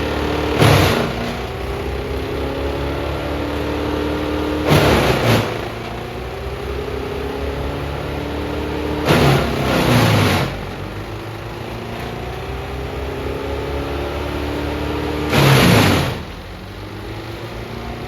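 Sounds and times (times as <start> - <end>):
loud rushing burst: 0.0 - 2.1, 3.6 - 6.2, 8.9 - 11.2, 15.2 - 16.5
diesel wood chipper running: 0.0 - 18.0.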